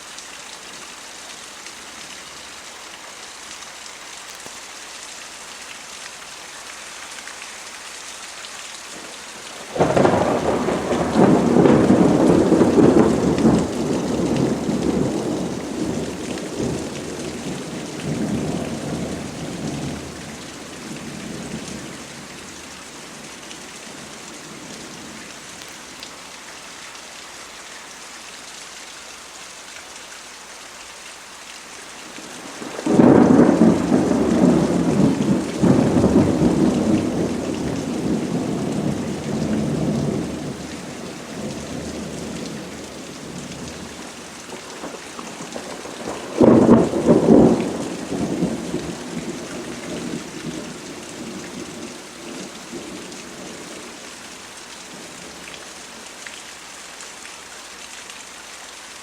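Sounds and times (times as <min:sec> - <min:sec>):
steady rain falling: 0:00.0 - 0:59.0
thunder rolling: 0:09.6 - 0:16.8, 0:32.4 - 0:40.6, 0:44.7 - 0:51.8.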